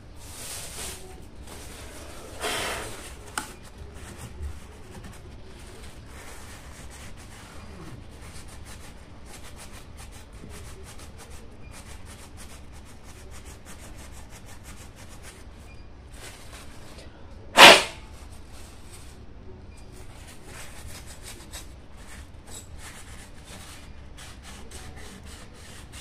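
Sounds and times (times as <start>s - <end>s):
rubbing strokes on laptop fan: 0.2s - 16.9s, 17.6s - 19.2s, 20.0s - 26.0s
short loud burst of noise: 17.6s - 18.0s.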